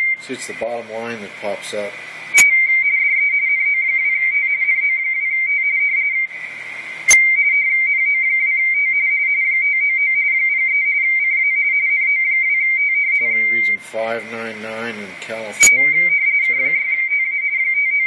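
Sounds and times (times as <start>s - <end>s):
receiver hiss: 0.0s - 2.8s, 6.3s - 7.4s, 13.2s - 17.0s
radio teletype warbling tone: 0.0s - 8.2s, 13.2s - 18.0s.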